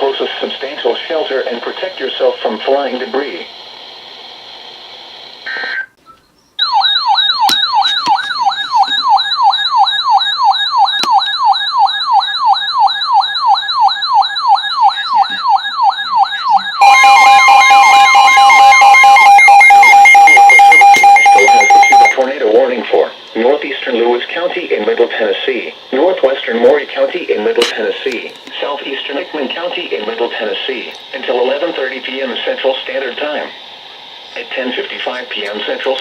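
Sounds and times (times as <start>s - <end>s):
warbling electronic siren tone: 6.6s - 22.2s
steady attention tone: 6.6s - 28.0s.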